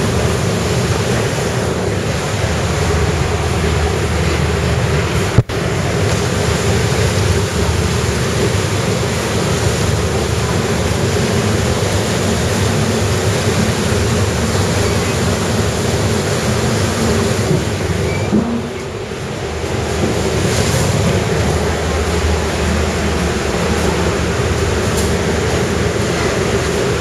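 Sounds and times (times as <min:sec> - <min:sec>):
train running through water: 0:00.0 - 0:27.0.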